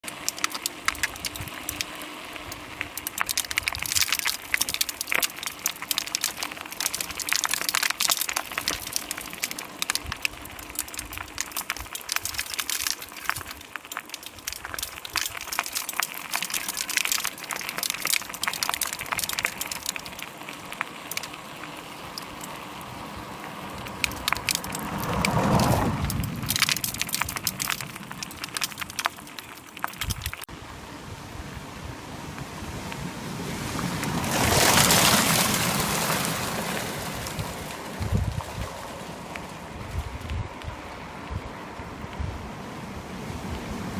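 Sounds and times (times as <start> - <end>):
crunching of loose road surface: 0.0 - 43.9
vehicle passing by: 22.6 - 27.7.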